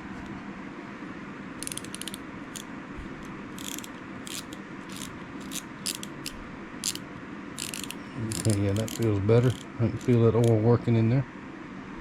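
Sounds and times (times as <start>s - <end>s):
fishing reel gears clicking: 1.6s - 2.7s, 3.5s - 10.6s.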